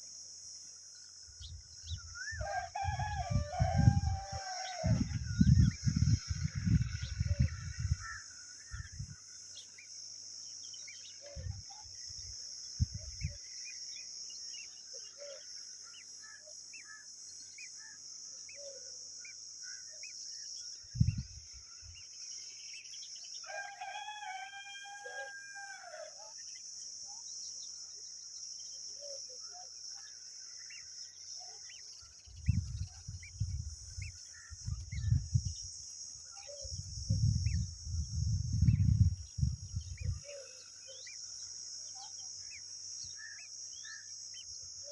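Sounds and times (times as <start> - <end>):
rooster crowing: 2.4 - 5.1, 23.4 - 26.2
faint bird chirps: 26.2 - 44.9.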